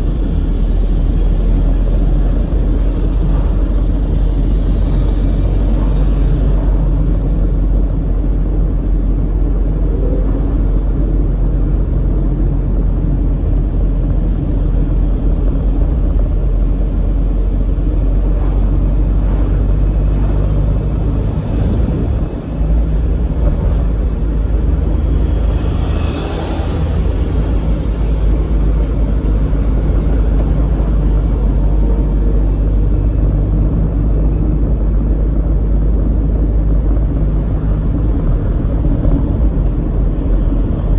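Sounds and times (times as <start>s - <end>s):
car road and engine noise: 0.0s - 40.9s
vehicle passing hiss: 24.2s - 31.2s.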